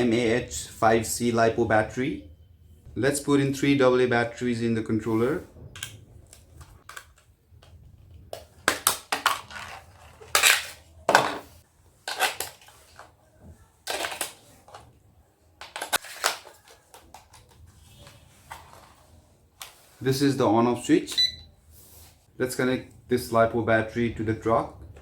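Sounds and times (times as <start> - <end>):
batteries and plastic cover rattling: 13.8 - 14.9, 15.6 - 17.8.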